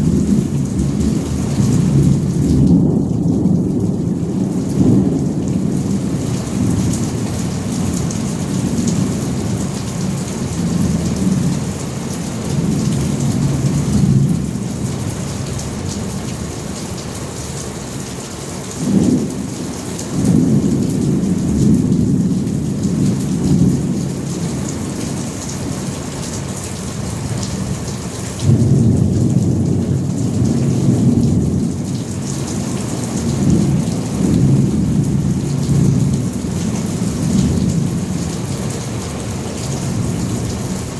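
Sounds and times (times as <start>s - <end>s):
thunder rumbling: 0.0s - 11.7s, 18.8s - 25.4s, 27.4s - 40.9s
heavy rain: 0.0s - 40.9s.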